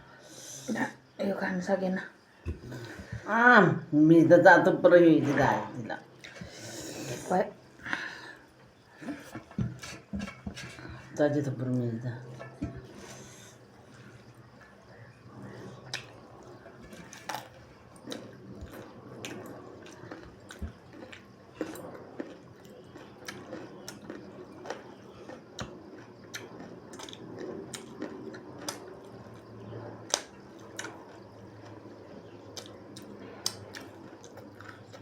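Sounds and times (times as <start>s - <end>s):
person chewing with mouth clicks: 16.9s - 28.9s.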